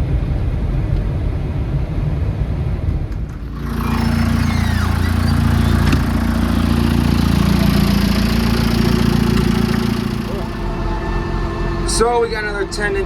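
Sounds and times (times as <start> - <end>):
vehicle engine running: 3.2 - 13.0
road noise hiss: 3.4 - 13.0.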